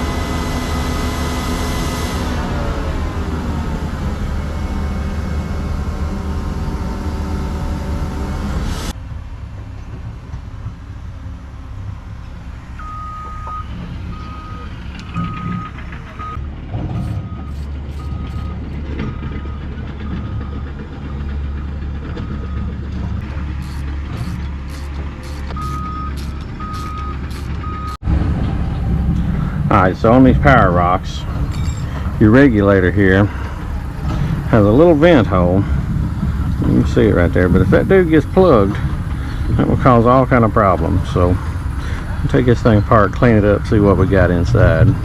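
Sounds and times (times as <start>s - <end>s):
diesel engine running: 0.0s - 45.0s
alarm beeping: 12.8s - 16.4s, 17.1s - 20.7s, 23.6s - 28.0s.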